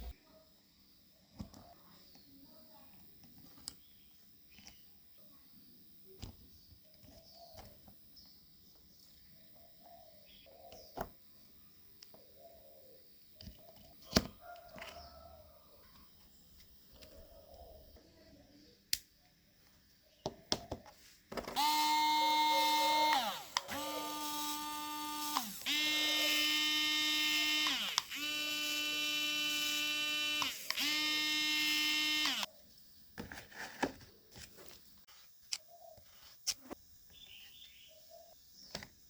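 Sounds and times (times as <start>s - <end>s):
small fan motor whining: 21.6s - 32.5s.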